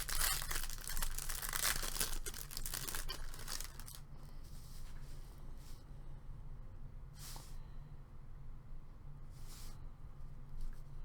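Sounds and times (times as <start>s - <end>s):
trading cards rustling: 0.0s - 4.0s.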